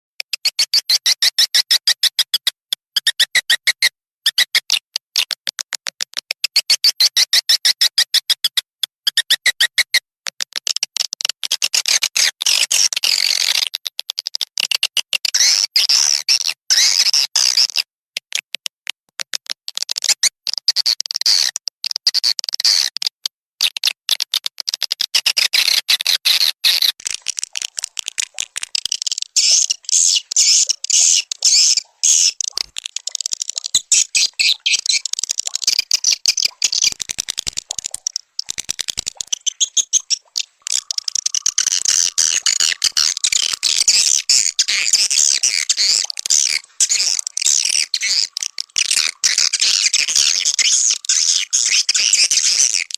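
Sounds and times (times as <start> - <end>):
recorded bird chirps and twitters: 25.4 - 52.9.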